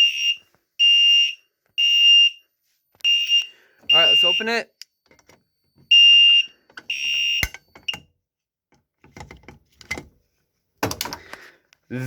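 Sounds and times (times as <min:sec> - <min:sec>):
fire alarm horn beeping: 0:00.0 - 0:04.7, 0:05.9 - 0:08.0.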